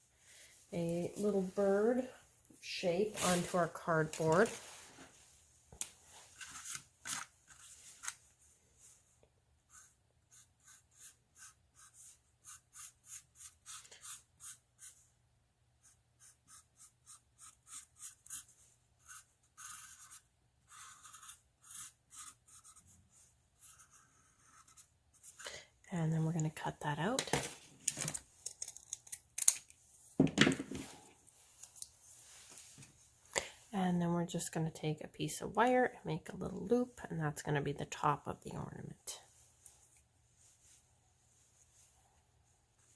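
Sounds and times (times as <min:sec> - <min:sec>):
drawing tip strokes on cardboard: 0:09.7 - 0:15.0, 0:15.8 - 0:25.4.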